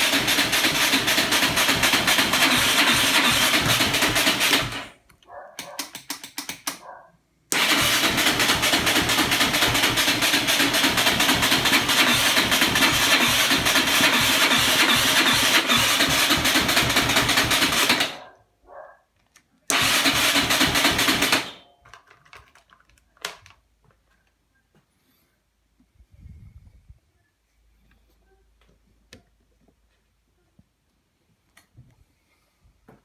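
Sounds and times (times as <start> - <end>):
engine cranking on starter: 0.0 - 5.0, 7.5 - 18.2, 19.7 - 21.6
starter click: 7.5 - 9.6.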